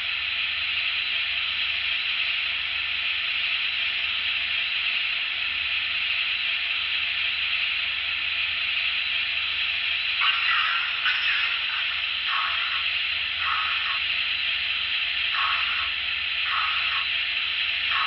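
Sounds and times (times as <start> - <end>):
steam hissing: 8.5 - 18.0
faint low hum: 10.2 - 18.0.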